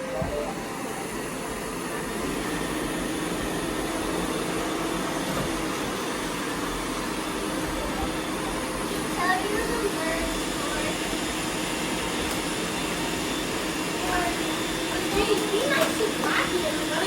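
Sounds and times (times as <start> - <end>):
robot vacuum cleaners whirring: 0.0 - 17.0.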